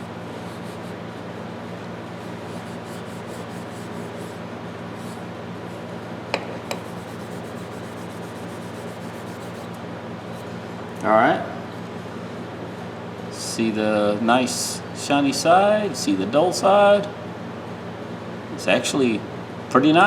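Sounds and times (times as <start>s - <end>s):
steel wool scrubbing metal: 2.2s - 4.4s, 6.7s - 9.8s.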